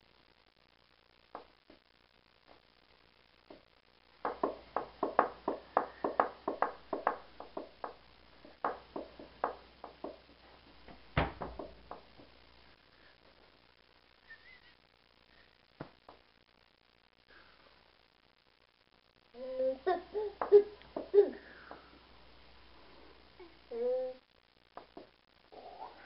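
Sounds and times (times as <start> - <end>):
sharp taps: 4.2 - 10.2
loud knock: 11.2 - 12.1.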